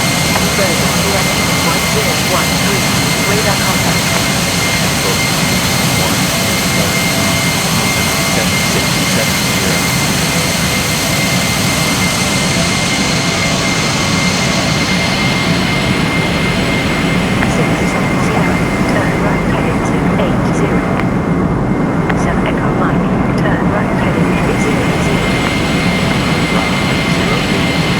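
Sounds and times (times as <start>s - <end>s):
jet engines rumbling and whining: 0.0s - 27.9s.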